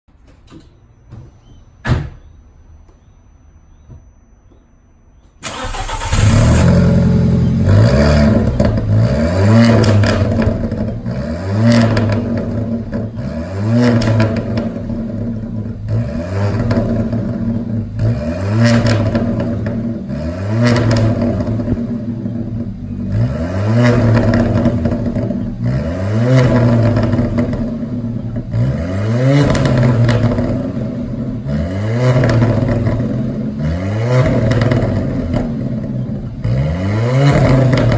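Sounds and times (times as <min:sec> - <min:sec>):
car engine revving: 0:05.4 - 0:37.9
exhaust pops and crackles: 0:07.5 - 0:11.1, 0:13.8 - 0:15.8, 0:20.6 - 0:22.8, 0:29.4 - 0:31.2, 0:34.2 - 0:36.6, 0:37.2 - 0:37.9.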